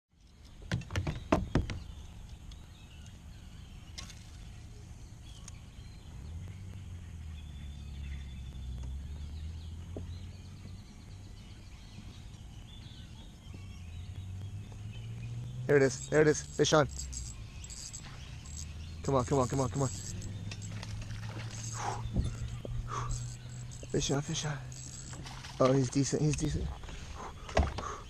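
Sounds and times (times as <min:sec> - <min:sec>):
sharp knocks: 0:00.7 - 0:01.9.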